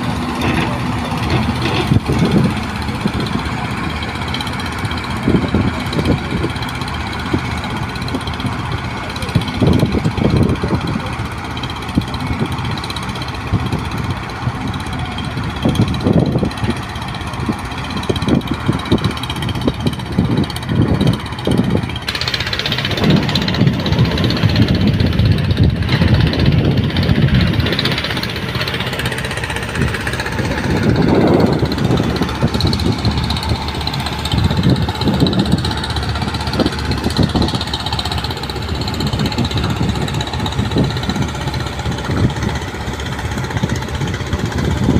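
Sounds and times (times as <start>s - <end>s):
excavator diesel engine under load: 0.0s - 44.9s.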